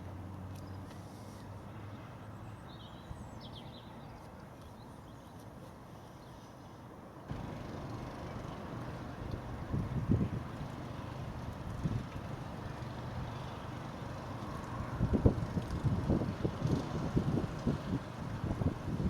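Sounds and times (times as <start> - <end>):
outdoor background rumble: 7.3 - 19.0.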